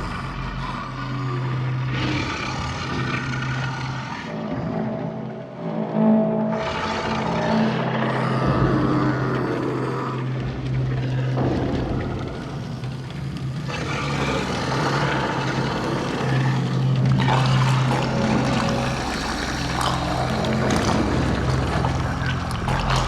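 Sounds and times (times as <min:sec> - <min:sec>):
low droning hum: 0:08.1 - 0:23.0.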